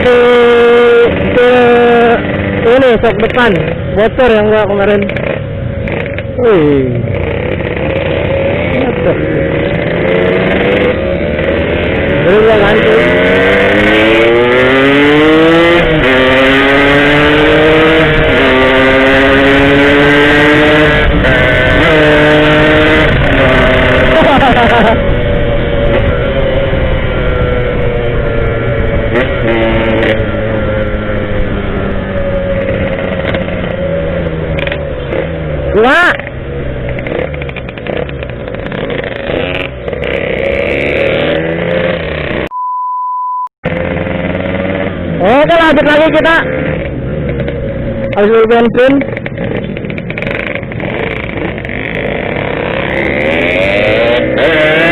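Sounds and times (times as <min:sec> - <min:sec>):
motorcycle engine accelerating: 0:00.0 - 0:42.5, 0:43.6 - 0:54.9
road and wind noise: 0:00.0 - 0:42.5, 0:43.6 - 0:54.9
steady pure beep tone: 0:42.5 - 0:43.6.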